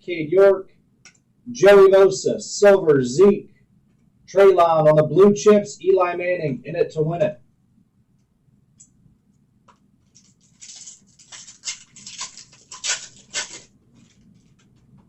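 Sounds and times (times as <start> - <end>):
cards and wrappers rustling: 10.0 - 15.0.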